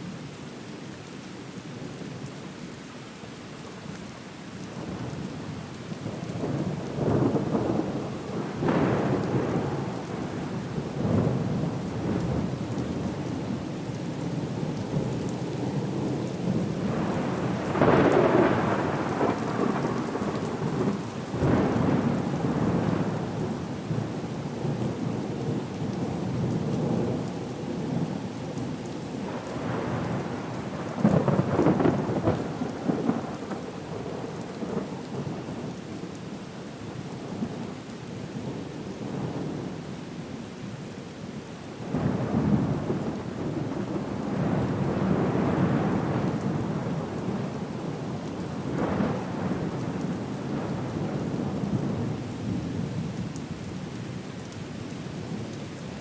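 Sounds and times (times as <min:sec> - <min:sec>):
steady rain: 0:00.0 - 0:56.0
rolling thunder: 0:16.5 - 0:24.0, 0:29.3 - 0:34.9.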